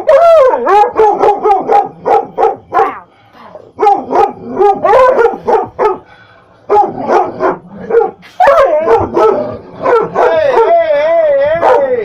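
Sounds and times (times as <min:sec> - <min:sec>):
dog howl-like cry: 0:00.0 - 0:01.9, 0:08.4 - 0:12.0
dog barking: 0:00.1 - 0:03.0, 0:03.8 - 0:06.1, 0:06.7 - 0:10.7, 0:11.6 - 0:11.9.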